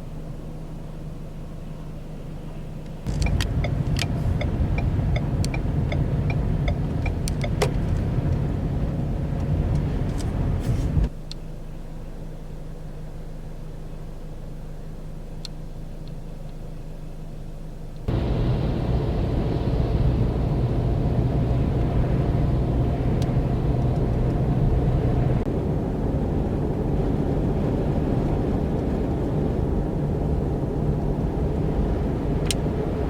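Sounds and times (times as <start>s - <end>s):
road and wind noise: 0.0s - 11.2s, 18.0s - 33.0s
vehicle engine hum: 0.0s - 33.0s.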